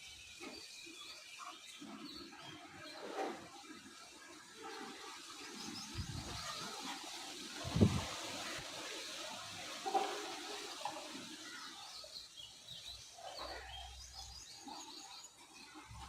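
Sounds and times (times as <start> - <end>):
steady rushing noise: 7.6 - 8.6.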